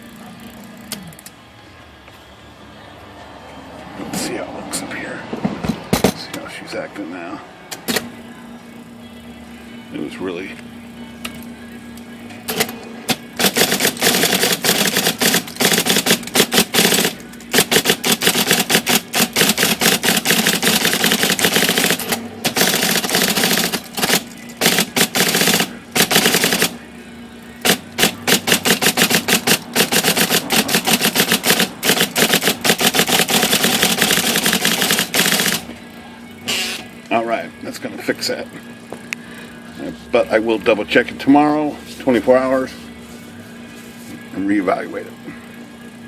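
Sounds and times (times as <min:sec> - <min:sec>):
typewriter motor hum: 0:12.5 - 0:26.8, 0:27.6 - 0:35.7
typewriter typing clacks: 0:13.4 - 0:26.7, 0:27.6 - 0:35.6.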